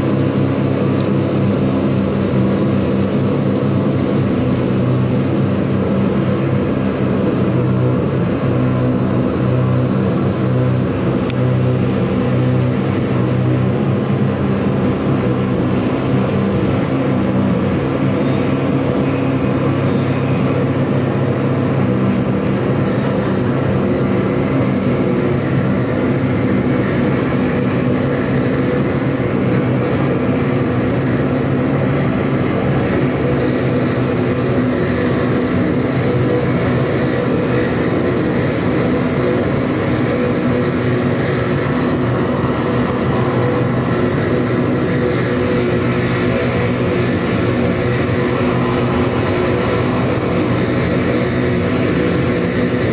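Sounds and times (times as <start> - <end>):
droning noise music: 0.0 - 52.9.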